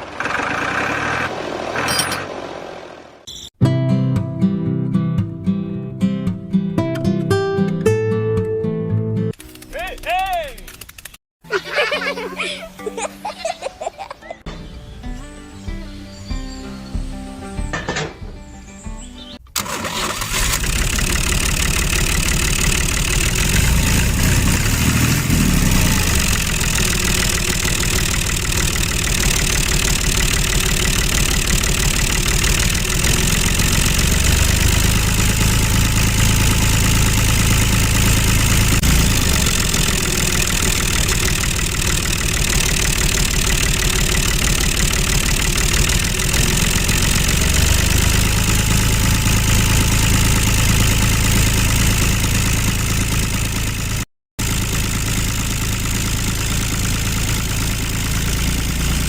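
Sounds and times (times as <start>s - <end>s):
engine running: 0.0s - 3.3s, 19.5s - 59.0s.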